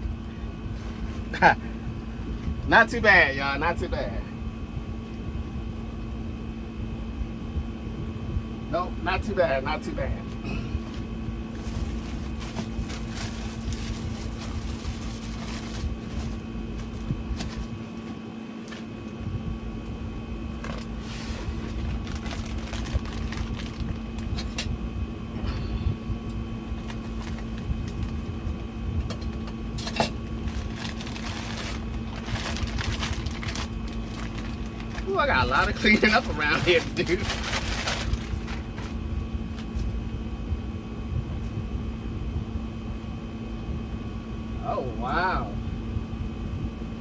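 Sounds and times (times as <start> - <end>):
steady mechanical hum: 0.0 - 47.0
rustling: 36.0 - 39.0.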